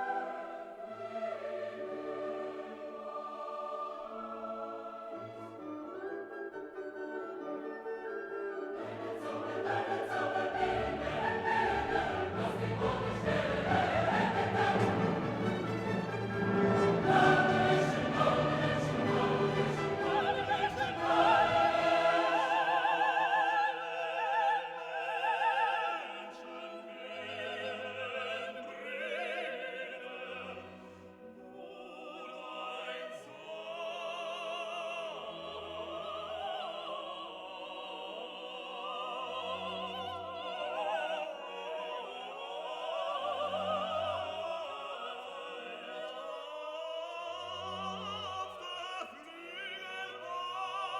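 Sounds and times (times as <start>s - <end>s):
classical solo voice with orchestra: 0.0s - 50.9s.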